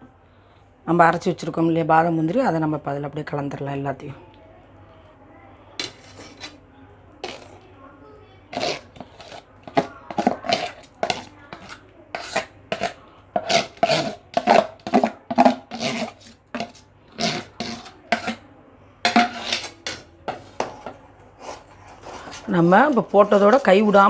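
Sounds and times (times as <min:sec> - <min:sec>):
metal spoon scraping cookware: 0:05.8 - 0:06.6, 0:07.2 - 0:07.6, 0:08.5 - 0:18.4, 0:19.1 - 0:24.0.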